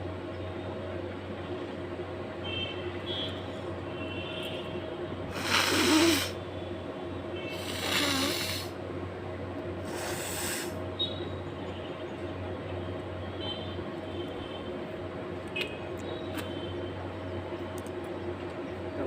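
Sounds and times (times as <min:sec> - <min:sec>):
person blowing nose: 0:05.3 - 0:06.4, 0:07.6 - 0:08.7, 0:09.8 - 0:10.8.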